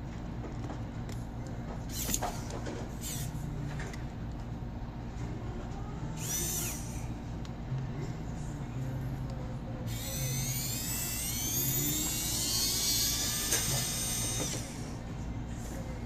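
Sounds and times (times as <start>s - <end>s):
low steady hum: 0.0s - 16.0s
electric tool motor whining: 3.0s - 3.3s, 6.2s - 7.0s, 9.9s - 15.0s.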